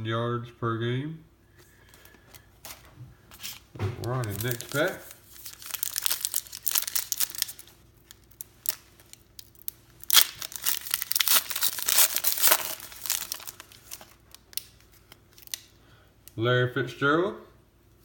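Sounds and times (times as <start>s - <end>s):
wrapper crinkling: 1.9s - 15.8s.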